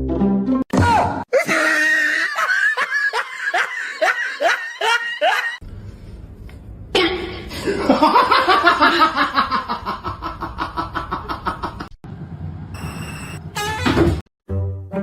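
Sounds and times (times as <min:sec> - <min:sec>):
person laughing hard: 0:01.3 - 0:05.6, 0:07.6 - 0:11.9.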